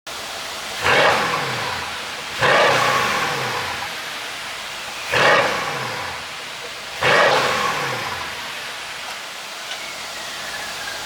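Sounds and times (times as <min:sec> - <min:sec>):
car engine revving: 0:00.3 - 0:09.1
exhaust pops and crackles: 0:00.8 - 0:04.0, 0:04.6 - 0:09.2.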